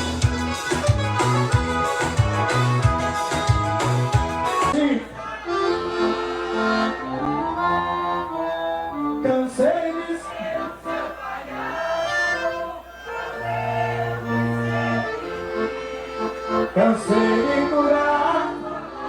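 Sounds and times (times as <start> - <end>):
live band music with accordion: 0.0 - 19.0
person singing: 16.7 - 19.0.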